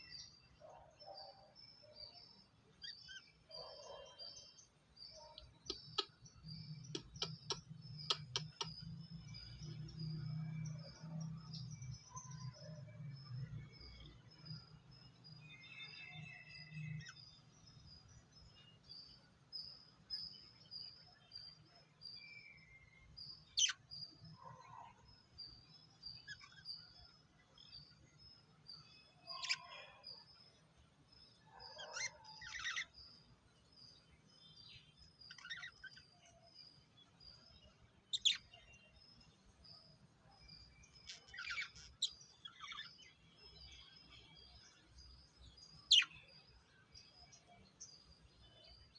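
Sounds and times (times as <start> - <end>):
lovebirds chirping: 0.0 - 48.9.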